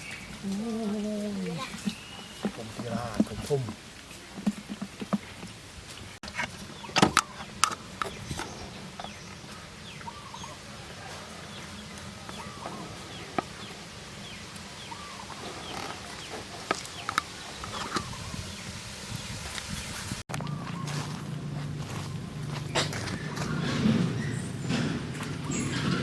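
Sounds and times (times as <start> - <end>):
birds calling: 0.0 - 26.0.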